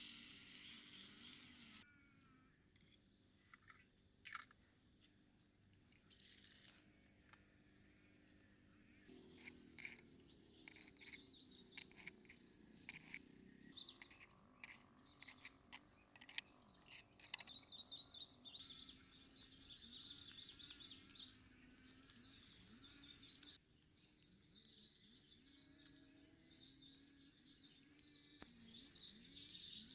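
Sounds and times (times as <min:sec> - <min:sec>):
birds chirping: 0:09.1 - 0:29.9.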